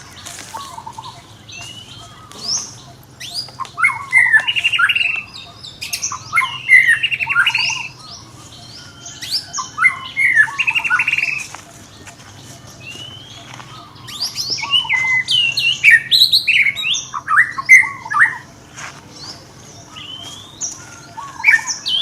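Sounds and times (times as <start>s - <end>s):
animal squeaks and chirps: 0.0s - 11.6s
animal chattering trills: 0.0s - 11.9s.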